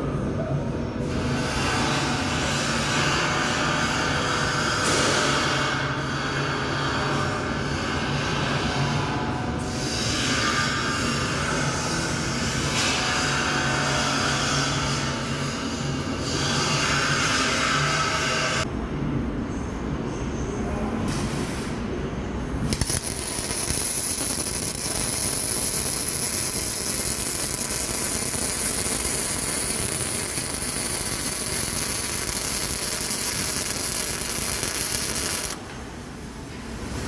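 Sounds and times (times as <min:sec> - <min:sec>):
welding arc crackling and hissing: 0:22.5 - 0:35.6.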